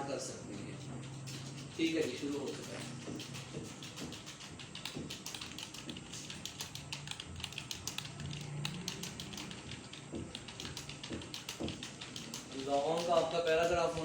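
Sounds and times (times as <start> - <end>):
keyboard typing: 0.5 - 14.0.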